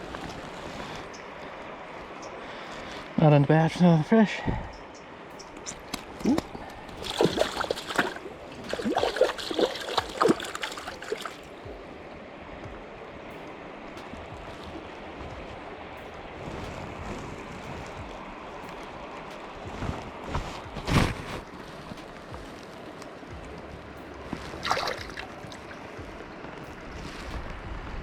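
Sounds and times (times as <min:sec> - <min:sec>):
river water rushing: 0:00.0 - 0:28.0
water splashing and sloshing: 0:00.0 - 0:28.0.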